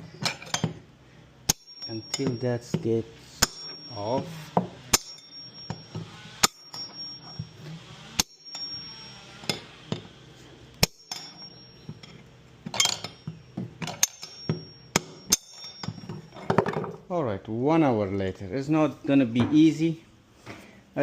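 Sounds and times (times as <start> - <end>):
hammer striking metal: 1.5 - 10.2, 10.8 - 16.3.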